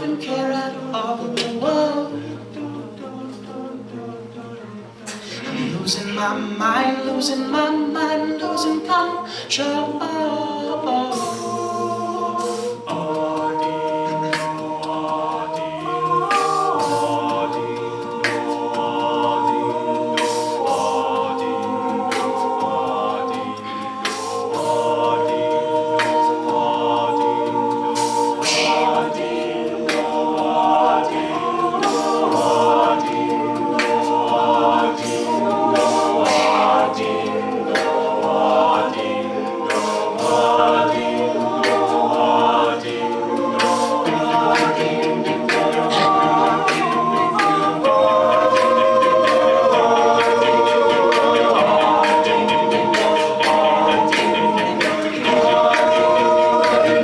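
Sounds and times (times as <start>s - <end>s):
a cappella group singing: 0.0s - 57.0s
vocal percussion beat: 0.0s - 57.0s.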